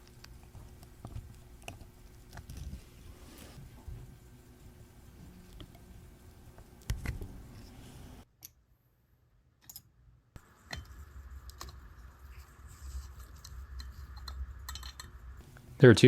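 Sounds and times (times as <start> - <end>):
small metal tools clicking: 13.4 - 15.2.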